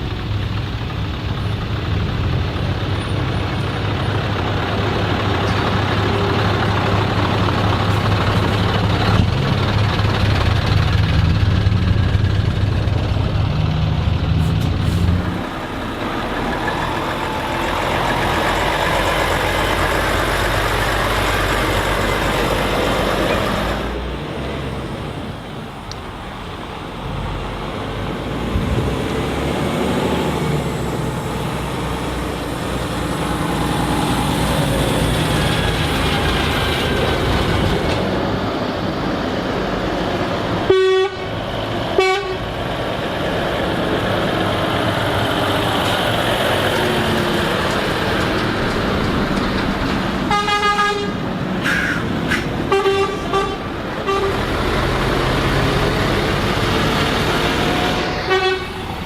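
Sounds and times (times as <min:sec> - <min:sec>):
trucks running: 0:00.0 - 0:59.0
truck horn blasts: 0:40.7 - 0:42.6, 0:50.3 - 0:54.7, 0:58.2 - 0:58.9.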